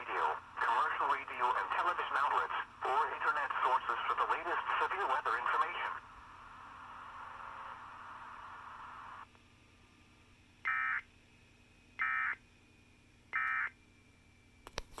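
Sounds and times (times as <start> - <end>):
radio noise hiss: 0.0 - 9.3, 10.7 - 11.0.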